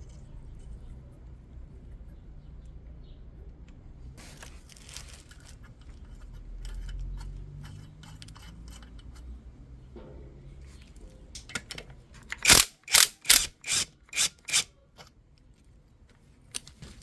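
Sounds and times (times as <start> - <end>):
metal tools clicking and rattling: 11.4 - 14.7.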